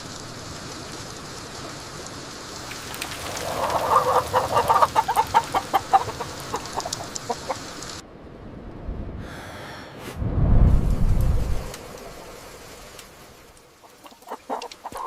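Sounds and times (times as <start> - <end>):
steady rain: 0.0 - 15.0
chickens clucking: 3.2 - 7.7, 13.8 - 15.0
loud low rumble: 10.2 - 11.8.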